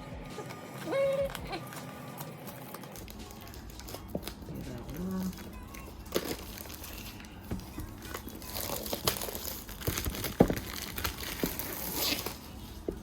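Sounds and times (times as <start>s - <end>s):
packaging crinkling and rustling: 0.7s - 13.0s.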